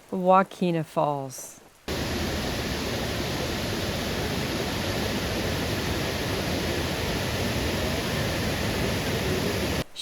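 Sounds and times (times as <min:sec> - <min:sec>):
waterfall rushing: 0:01.9 - 0:09.8.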